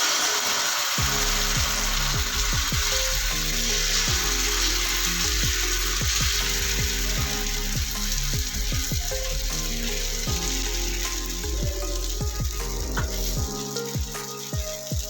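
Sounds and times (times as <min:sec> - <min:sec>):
batter sizzling on a pan: 0:00.0 - 0:15.0
music: 0:00.4 - 0:15.0.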